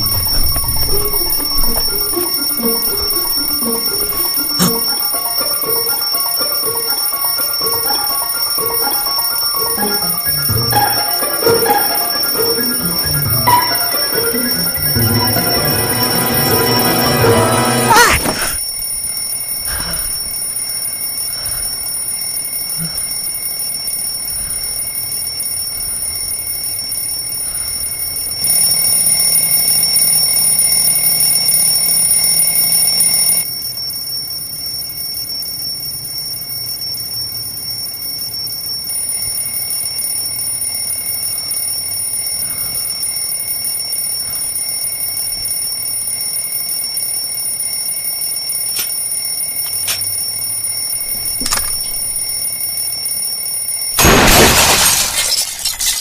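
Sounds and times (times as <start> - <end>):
alarm clock ringing: 0.0 - 33.6.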